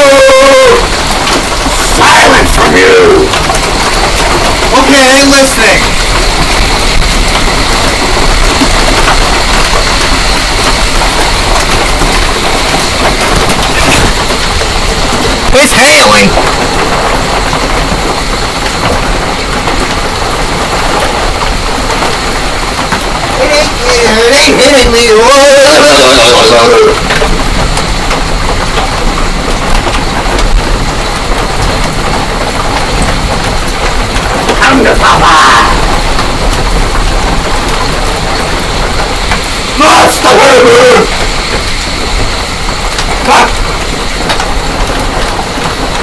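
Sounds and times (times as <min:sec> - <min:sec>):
heavy hail falling: 0:00.0 - 0:46.0.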